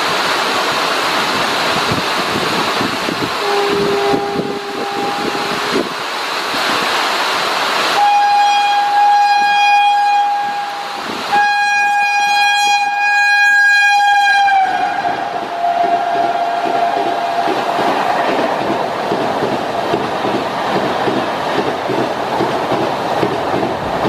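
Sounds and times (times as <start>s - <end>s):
passing train rushing: 0.0s - 24.0s
locomotive horn blasts: 3.4s - 5.8s, 8.0s - 17.3s.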